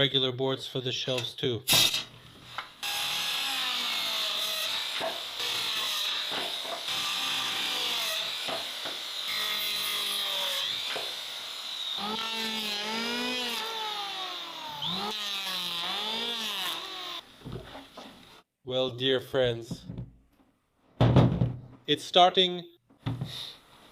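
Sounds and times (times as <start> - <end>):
power tool rasping wood: 2.8 - 17.2.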